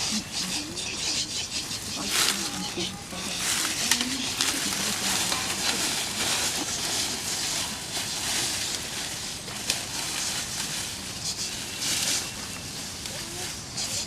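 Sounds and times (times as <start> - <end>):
rustling crackle: 0.0 - 14.0.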